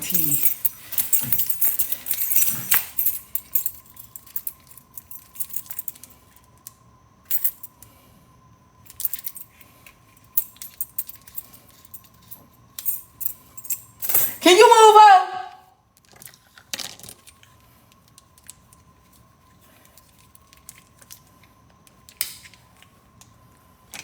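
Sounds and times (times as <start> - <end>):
keys jangling: 0.0 - 6.1, 8.9 - 9.5, 10.2 - 14.4.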